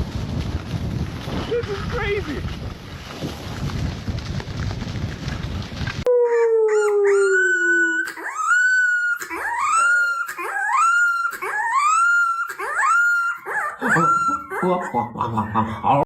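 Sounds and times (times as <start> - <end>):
dog howling: 6.1 - 15.0.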